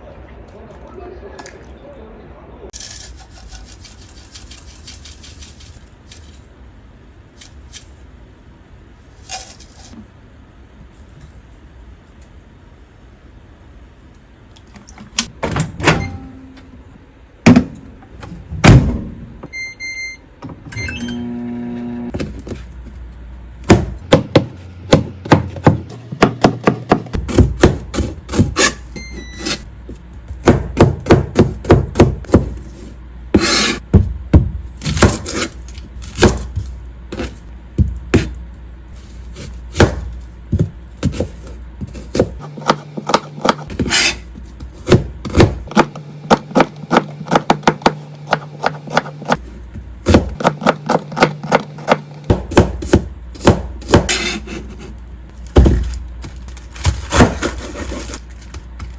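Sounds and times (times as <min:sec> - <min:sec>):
knife chopping on wooden board: 0:23.7 - 0:28.7, 0:39.4 - 0:44.2, 0:44.8 - 0:49.4, 0:50.0 - 0:54.4.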